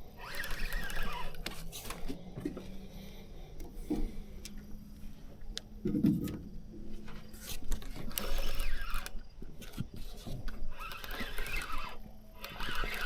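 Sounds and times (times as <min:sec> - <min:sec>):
fishing reel ratcheting: 0:00.0 - 0:01.9, 0:08.1 - 0:09.2, 0:10.7 - 0:13.0.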